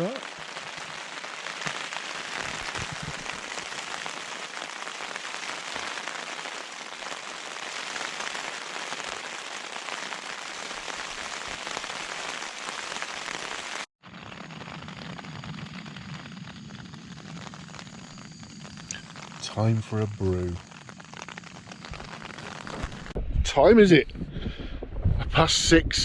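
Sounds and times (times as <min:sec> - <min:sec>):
heavy rain on tent flysheet: 0:00.0 - 0:23.2
low steady noise: 0:23.1 - 0:26.0.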